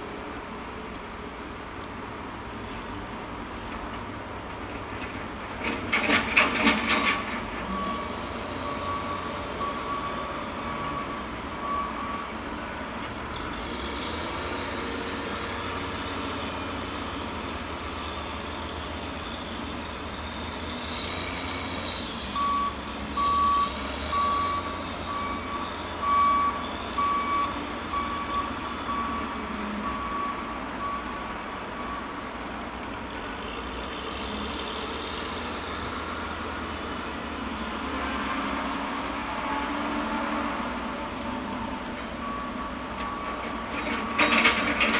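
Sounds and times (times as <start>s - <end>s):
reversing alarm beeping: 6.8s - 12.7s, 22.3s - 32.2s, 40.9s - 44.9s.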